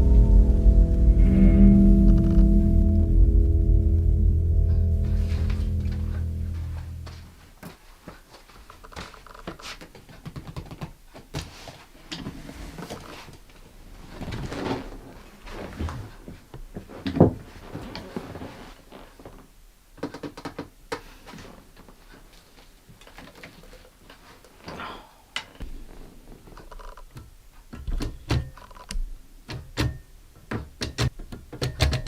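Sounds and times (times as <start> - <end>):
music: 0.0 - 7.3
knocks and thuds of handled objects: 27.0 - 32.0.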